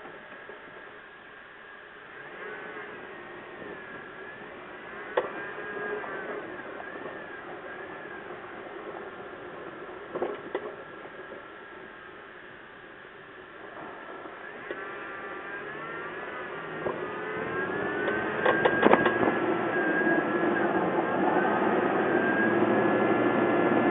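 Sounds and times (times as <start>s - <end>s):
vehicle noise: 0.0s - 23.9s
wavering high tones: 15.0s - 23.0s.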